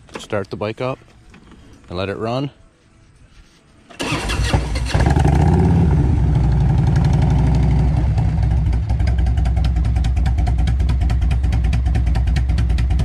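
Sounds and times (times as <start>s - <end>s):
motorcycle engine idling: 4.9s - 13.0s.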